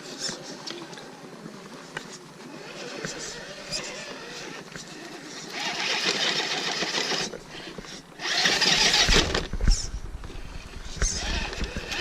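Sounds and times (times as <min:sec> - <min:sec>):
toy car motor and gears whining: 0:02.5 - 0:09.8, 0:11.0 - 0:12.0.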